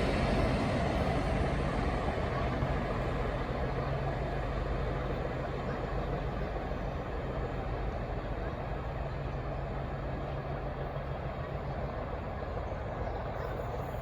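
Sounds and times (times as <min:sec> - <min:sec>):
diesel train engine rumble: 0:00.0 - 0:14.0
rail noise: 0:00.0 - 0:14.0.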